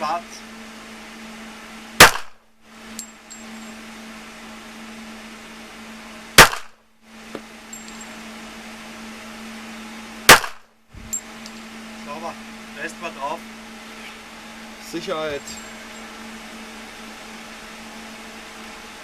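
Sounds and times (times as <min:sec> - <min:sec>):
steady low hum: 0:00.0 - 0:19.0
pistol shots: 0:02.0 - 0:02.4, 0:06.4 - 0:06.8, 0:10.3 - 0:10.7.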